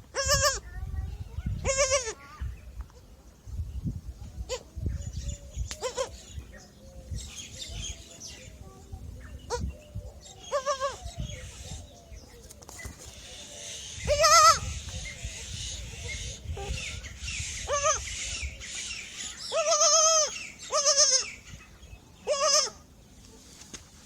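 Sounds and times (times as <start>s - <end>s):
goat kids bleating: 0.1s - 0.7s, 1.6s - 2.3s, 5.8s - 6.2s, 10.4s - 11.2s, 14.1s - 14.8s, 17.6s - 18.2s, 19.4s - 21.4s, 22.2s - 22.8s
small birds chirping: 0.7s - 23.4s.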